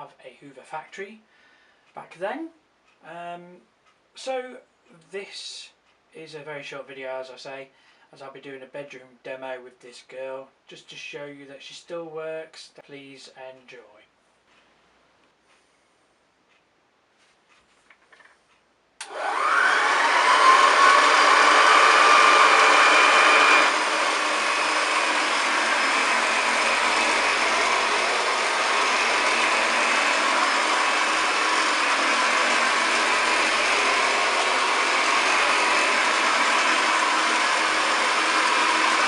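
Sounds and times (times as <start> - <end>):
vacuum cleaner motor whining: 19.0 - 39.0.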